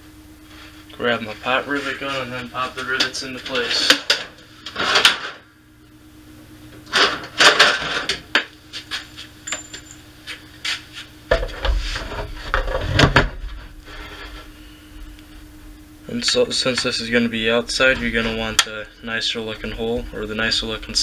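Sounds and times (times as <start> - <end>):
metal tools clicking and clattering: 9.5 - 10.0
low rumble: 17.2 - 21.0.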